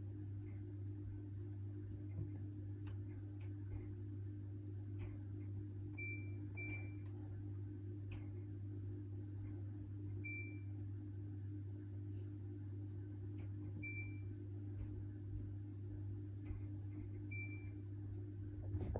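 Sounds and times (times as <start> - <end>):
low electrical hum: 0.0 - 18.9
washing machine beeps: 5.9 - 7.1, 10.2 - 10.8, 13.7 - 14.4, 17.2 - 17.9.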